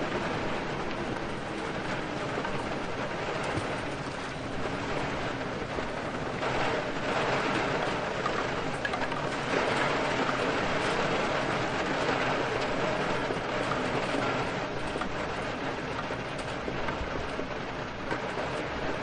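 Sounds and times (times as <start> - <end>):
steady rain: 0.0 - 19.0.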